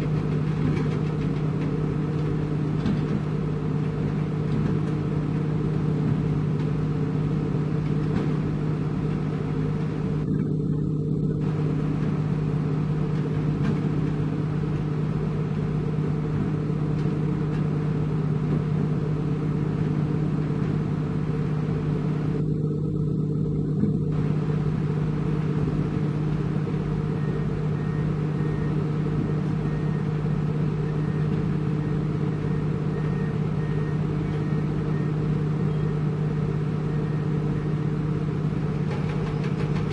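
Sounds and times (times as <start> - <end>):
diesel engine running: 0.0 - 39.9.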